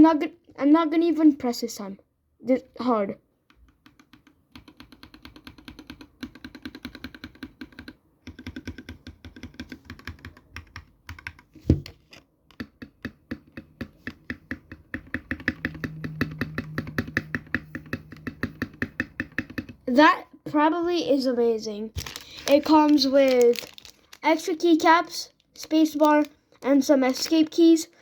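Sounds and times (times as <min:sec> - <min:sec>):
mechanical keyboard typing: 0:03.5 - 0:11.8, 0:12.5 - 0:19.9, 0:22.0 - 0:24.9, 0:25.6 - 0:27.8.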